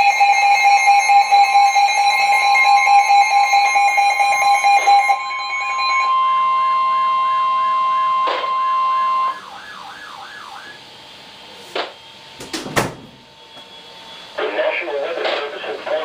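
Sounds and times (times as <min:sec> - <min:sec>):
two-tone alarm: 0:00.0 - 0:12.3, 0:13.2 - 0:14.4
warbling tone: 0:05.2 - 0:11.5.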